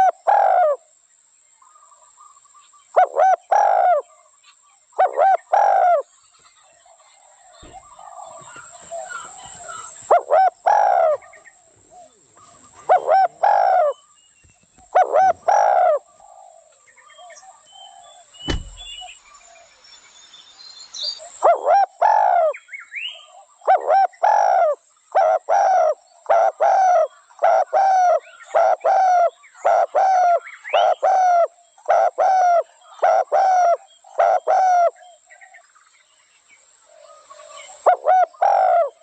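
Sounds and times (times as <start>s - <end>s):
dove cooing: 0.0s - 0.8s, 3.0s - 4.1s, 5.0s - 6.1s, 7.6s - 14.1s, 14.8s - 18.0s, 21.4s - 22.6s, 23.2s - 35.2s, 36.9s - 39.0s
sharp knock: 18.4s - 19.1s.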